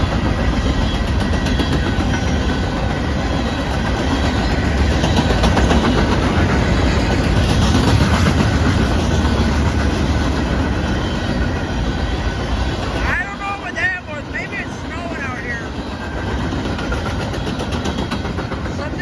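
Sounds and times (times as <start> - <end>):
train wheels rumbling on rails: 0.0 - 19.0
wheels ticking over rail joints: 0.0 - 19.0.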